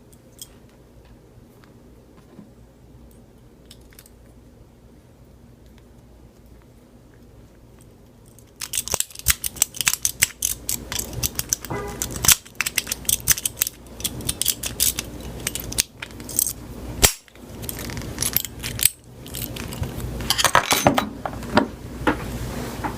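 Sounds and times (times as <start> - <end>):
small metal objects clicking: 8.2 - 20.6.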